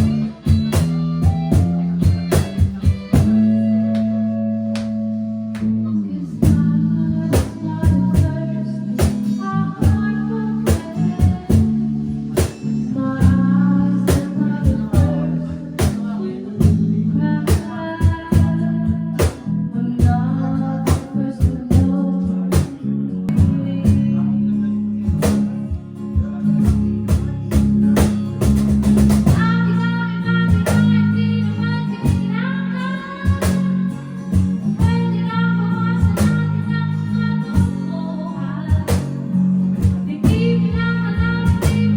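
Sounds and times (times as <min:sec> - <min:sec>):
drum-kit beat: 0:00.0 - 0:24.2, 0:25.0 - 0:31.2, 0:31.9 - 0:37.9, 0:38.7 - 0:41.9
bass guitar: 0:00.0 - 0:41.9
electric guitar: 0:00.0 - 0:41.9
person singing: 0:05.6 - 0:25.2, 0:29.3 - 0:41.9.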